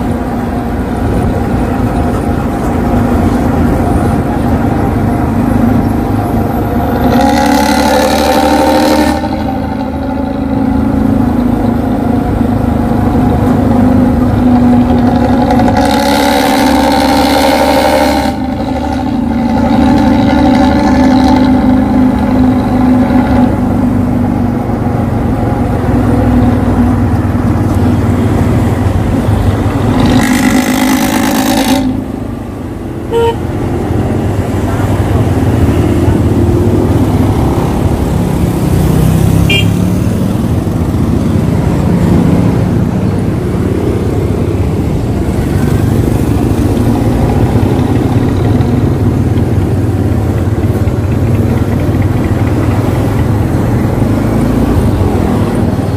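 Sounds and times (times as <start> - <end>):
engine running: 0.0 - 55.9.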